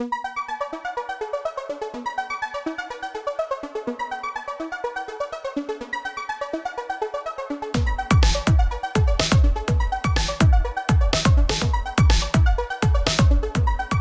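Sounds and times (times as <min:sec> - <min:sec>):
electronic music with synthesizer: 0:00.0 - 0:14.0.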